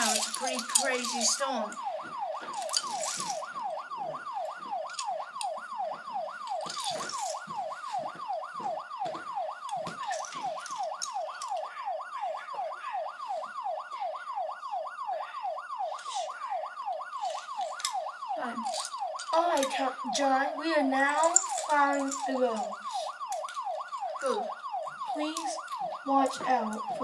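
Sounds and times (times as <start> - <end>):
toy siren yelping: 0.0 - 27.0.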